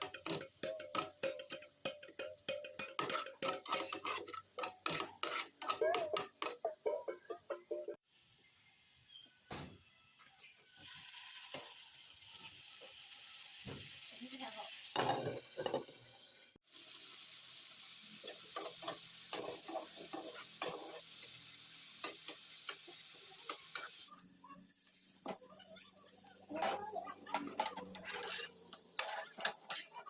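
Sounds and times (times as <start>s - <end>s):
spatula stirring and scraping: 0.0s - 8.0s, 18.2s - 30.0s
food sizzling in a hot pan: 8.1s - 30.0s.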